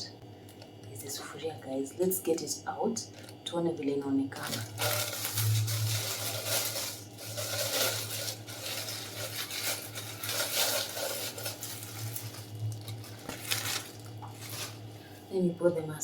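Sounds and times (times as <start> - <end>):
steady low hum: 0.0 - 16.0
wrapping rustling: 4.4 - 15.2.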